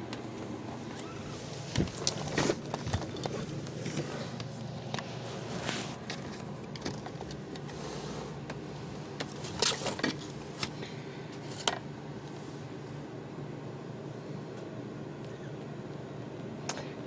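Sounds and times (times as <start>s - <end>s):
handling clicks and rustles: 0.0s - 7.8s, 8.4s - 12.4s
steady low hum: 0.0s - 17.0s.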